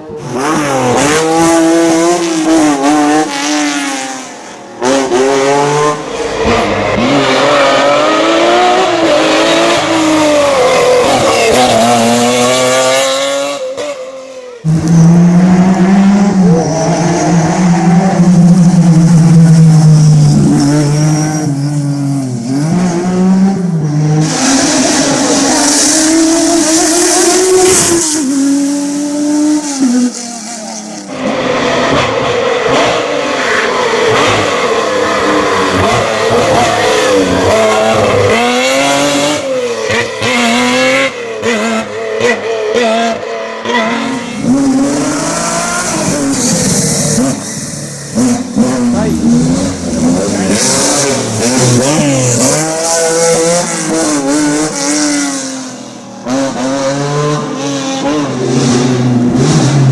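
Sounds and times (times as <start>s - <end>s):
car engine revving hard: 0.2s - 13.9s, 31.0s - 59.9s.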